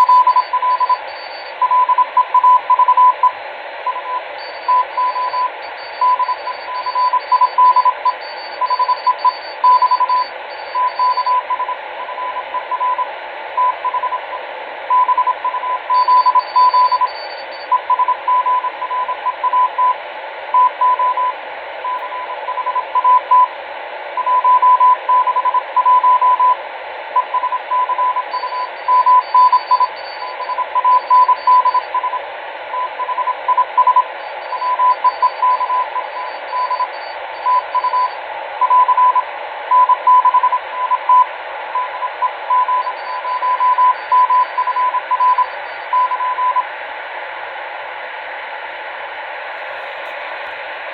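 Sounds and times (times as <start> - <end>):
faint high-pitched morse signal: 0.0 - 26.6, 27.2 - 46.8
radio receiver hiss: 48.3 - 50.9.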